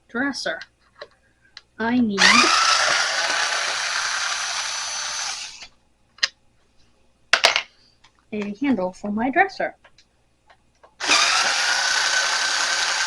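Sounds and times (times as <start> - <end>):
power drill whining: 2.2 - 5.7, 11.0 - 13.0.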